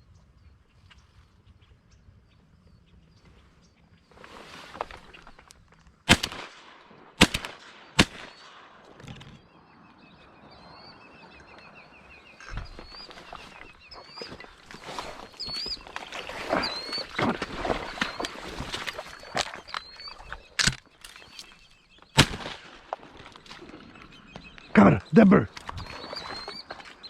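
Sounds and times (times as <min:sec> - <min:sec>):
shotgun shots: 0:06.1 - 0:09.0, 0:22.2 - 0:22.9
thin high wavering calls: 0:09.4 - 0:22.2, 0:23.6 - 0:27.0.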